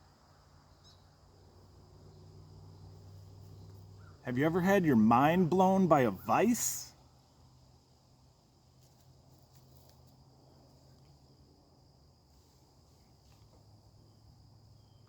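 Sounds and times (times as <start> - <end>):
faint high-pitched tone: 4.3 - 6.9.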